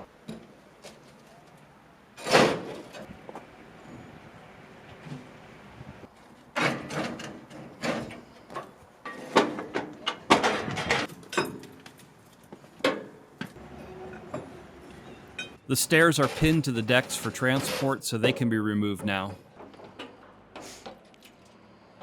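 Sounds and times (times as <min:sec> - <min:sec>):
metal clanking and scraping: 0:16.0 - 0:18.0.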